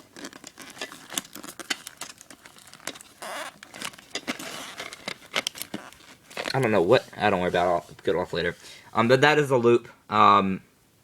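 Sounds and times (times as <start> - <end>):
plastic packaging clicks and crinkles: 0.0 - 7.0
short rustle: 0.0 - 8.7.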